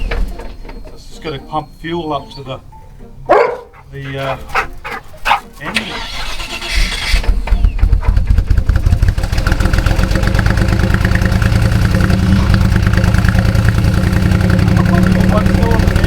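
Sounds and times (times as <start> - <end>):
engine cranking on starter: 5.6 - 16.0
car engine idling: 5.8 - 16.0.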